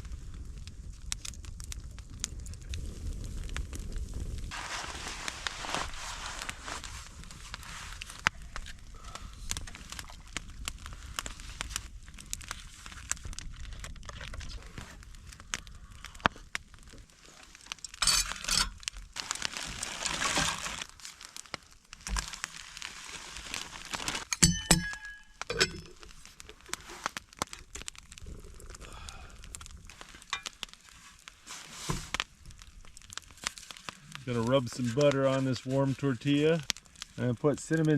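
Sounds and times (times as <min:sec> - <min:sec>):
packaging crinkling: 0:09.4 - 0:24.4, 0:25.0 - 0:35.9
metallic clink of cookware: 0:24.3 - 0:26.0.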